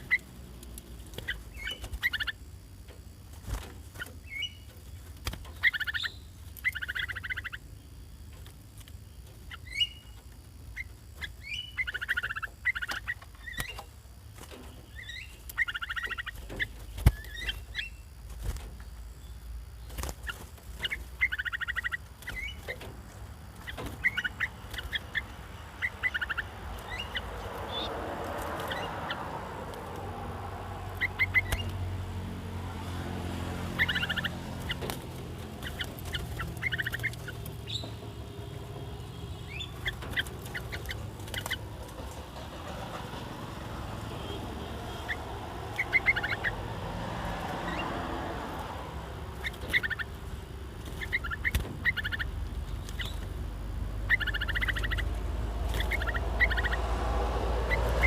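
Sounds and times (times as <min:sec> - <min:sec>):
birds chattering calls: 0:00.0 - 0:58.0.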